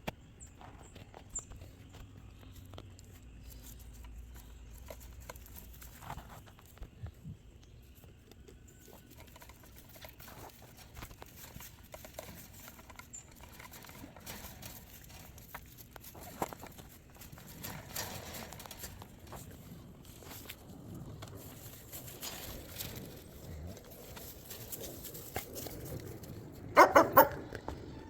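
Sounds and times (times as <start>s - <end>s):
goats rustling in hay: 8.8s - 26.3s.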